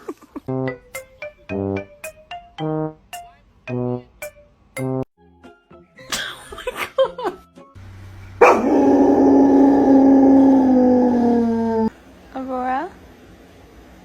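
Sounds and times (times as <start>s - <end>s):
dog howling: 8.4s - 11.9s.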